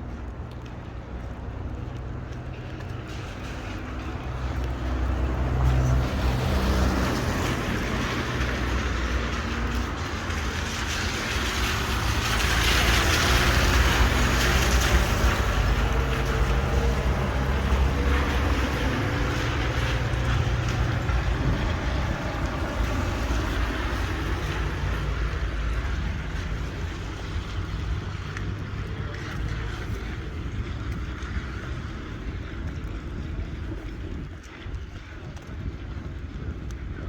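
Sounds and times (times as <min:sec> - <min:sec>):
vehicle engines humming: 0:00.0 - 0:34.6
wind on microphone: 0:00.0 - 0:37.0
tyres hissing on wet road: 0:02.5 - 0:32.2.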